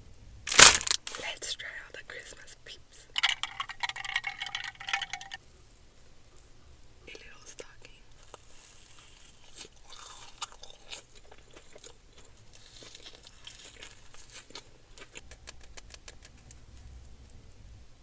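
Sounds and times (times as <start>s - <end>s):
crunchy chewing: 8.1s - 17.4s.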